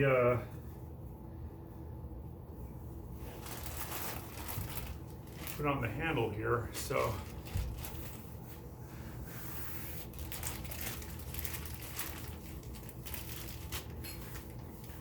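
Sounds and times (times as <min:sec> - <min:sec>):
plastic wrapping crinkling: 0:03.2 - 0:08.4, 0:10.0 - 0:15.0.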